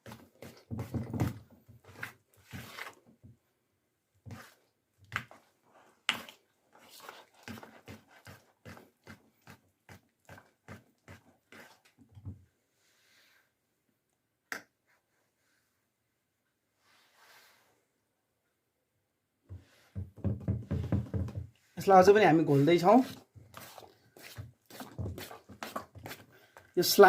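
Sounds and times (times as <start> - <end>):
slime squelching in a bowl: 4.4 - 12.1, 22.7 - 26.5.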